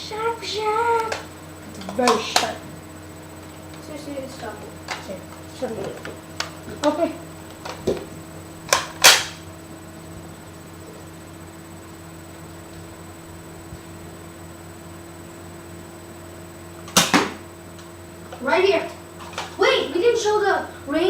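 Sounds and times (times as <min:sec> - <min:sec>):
steady low hum: 0:00.0 - 0:21.0
toy dart blaster clicks: 0:00.9 - 0:02.6, 0:08.6 - 0:09.4, 0:16.8 - 0:18.4
dart blaster snaps: 0:08.7 - 0:09.4, 0:16.8 - 0:17.9.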